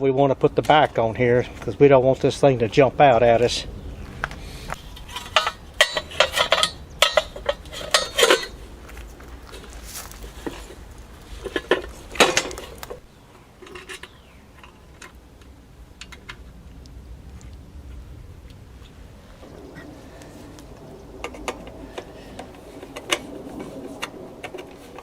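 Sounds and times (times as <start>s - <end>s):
metal clinks and clanks: 5.0s - 8.6s.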